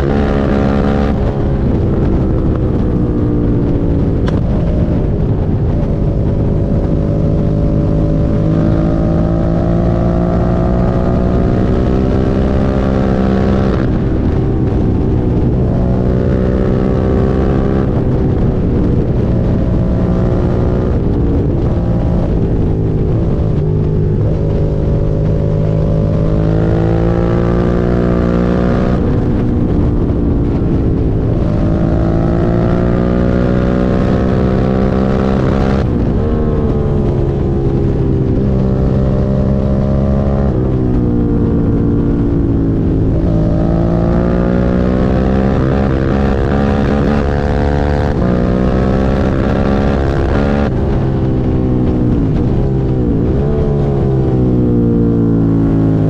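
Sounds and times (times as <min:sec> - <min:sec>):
motorcycle engine revving: 0:00.0 - 0:56.0.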